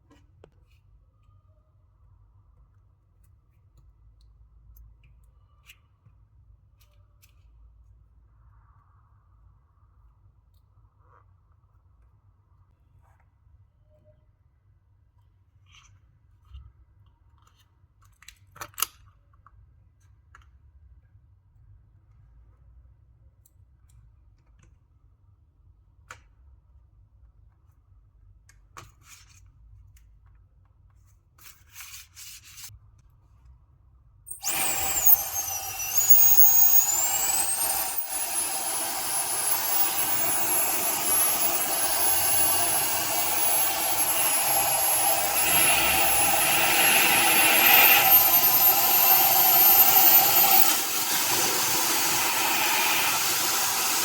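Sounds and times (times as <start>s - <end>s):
high-speed electric motor whine: 34.3s - 54.0s.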